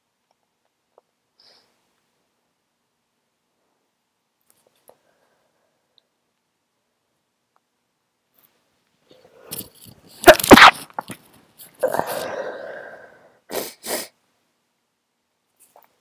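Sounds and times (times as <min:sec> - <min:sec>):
person sneezing: 0:10.2 - 0:10.9, 0:11.8 - 0:14.2
voiced breath: 0:11.9 - 0:13.4.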